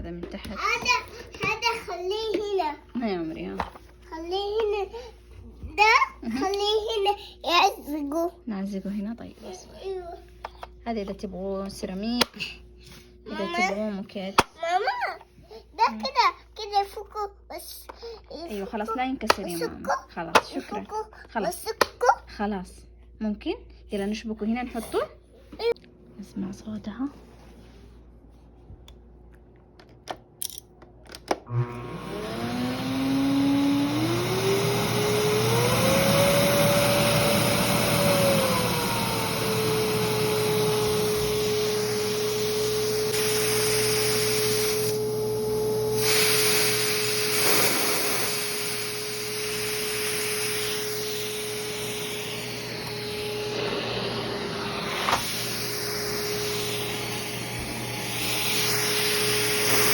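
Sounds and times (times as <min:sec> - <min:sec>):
vacuum cleaner motor whine: 0:31.4 - 0:59.9
airflow rush: 0:46.0 - 0:59.9.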